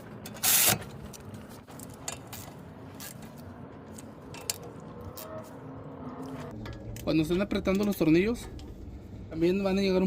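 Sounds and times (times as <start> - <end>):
handling of tools and parts: 0.0 - 5.6.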